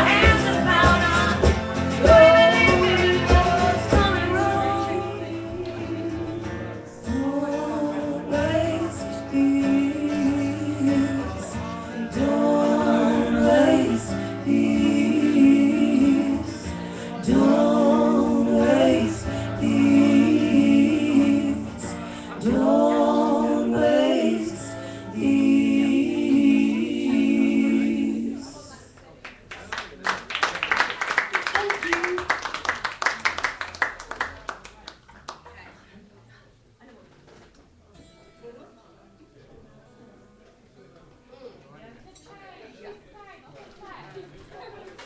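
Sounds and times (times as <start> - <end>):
guitar playing: 0.0 - 28.3.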